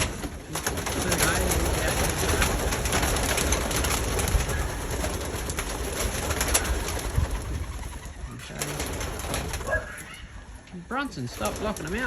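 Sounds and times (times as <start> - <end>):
pigeons cooing: 0.0 - 12.0.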